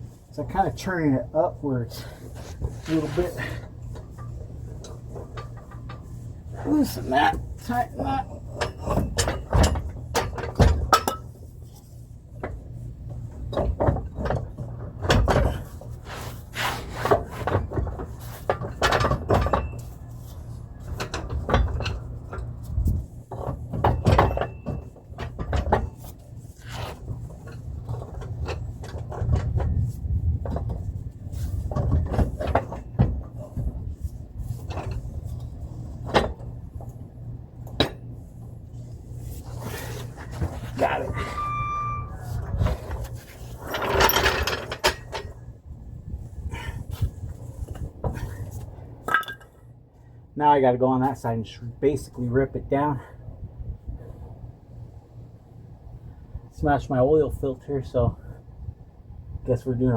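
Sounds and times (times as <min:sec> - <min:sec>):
metal knocks and clanks: 0:07.3 - 0:11.4, 0:23.3 - 0:26.0, 0:39.7 - 0:45.4
low hum: 0:27.3 - 0:50.3.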